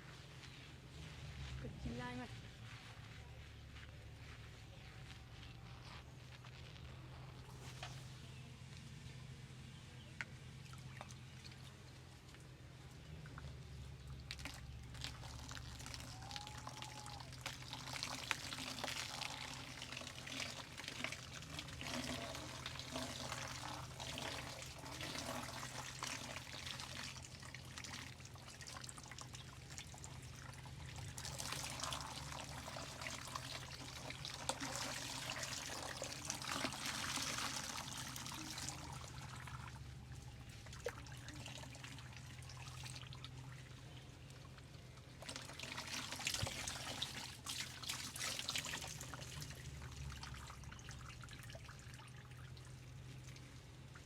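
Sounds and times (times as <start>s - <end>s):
steady low hum: 0.0s - 16.3s
water pouring over hair: 14.2s - 43.8s, 44.5s - 54.0s.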